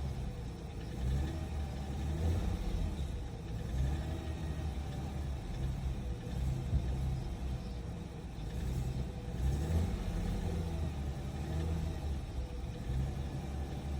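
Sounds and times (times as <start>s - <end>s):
car engine running with knock: 4.6s - 9.5s.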